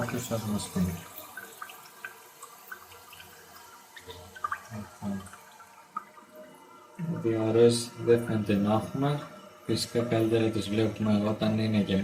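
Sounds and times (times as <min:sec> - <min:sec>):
water trickling in cistern: 0:00.0 - 0:12.0.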